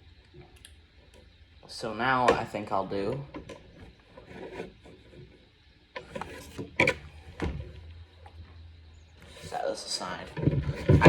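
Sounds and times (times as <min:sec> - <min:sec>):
scraping: 0:02.3 - 0:05.4, 0:06.0 - 0:07.8, 0:09.2 - 0:11.0.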